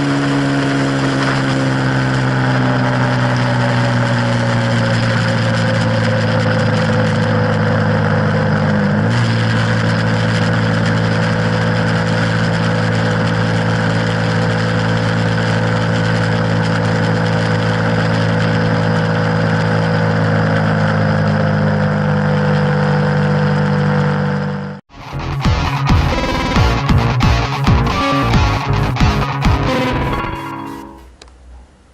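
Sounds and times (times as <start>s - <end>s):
wind and road noise: 0.0s - 24.5s
motorcycle engine at high revs: 0.0s - 31.0s.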